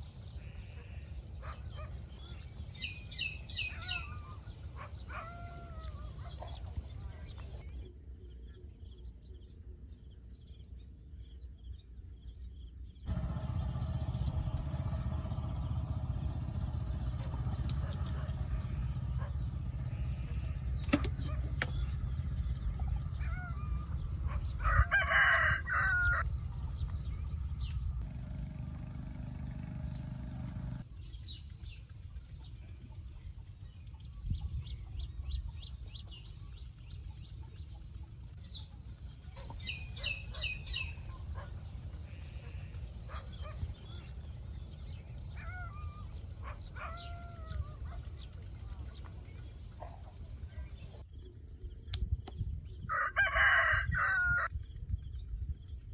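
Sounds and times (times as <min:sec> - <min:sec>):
outdoor background noise: 0:00.0 - 0:55.9
rooster crowing: 0:24.6 - 0:26.3, 0:52.9 - 0:54.5.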